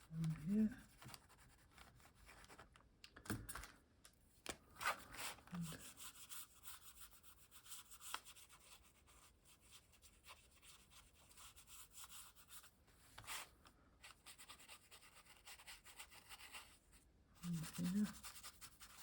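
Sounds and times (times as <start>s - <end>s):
paper rustling under hands: 0.1s - 2.8s.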